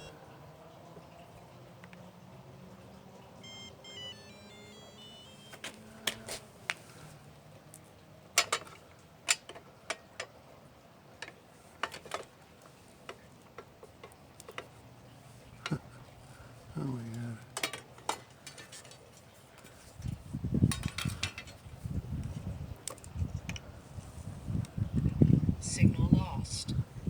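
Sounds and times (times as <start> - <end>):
faint low hum: 0.0 - 7.6
short electronic beeps: 3.4 - 5.7.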